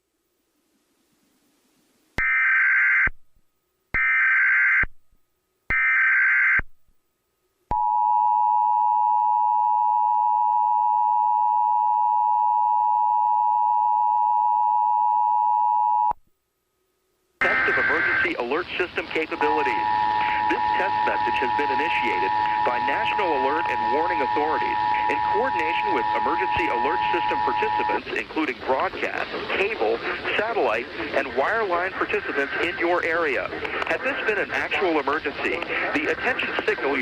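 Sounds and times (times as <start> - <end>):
digital data bursts: 17.4 - 33.3
two-tone attention signal: 19.2 - 28.0.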